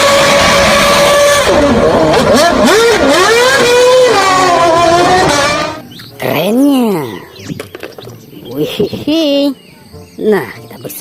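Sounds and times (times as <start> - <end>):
racing car engine revving: 0.0 - 5.8.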